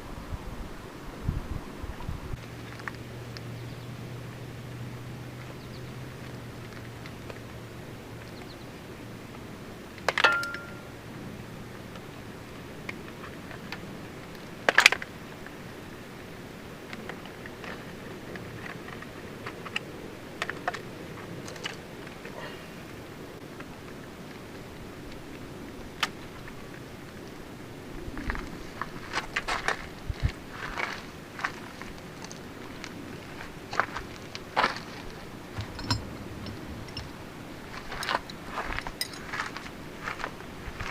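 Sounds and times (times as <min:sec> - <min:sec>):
low background hiss: 0:00.0 - 0:40.9
metal tools clinking: 0:10.2 - 0:10.9, 0:35.6 - 0:37.2, 0:37.8 - 0:39.4
metallic ring: 0:10.2 - 0:11.0, 0:35.6 - 0:38.0
light clicks and knocks: 0:35.6 - 0:37.2.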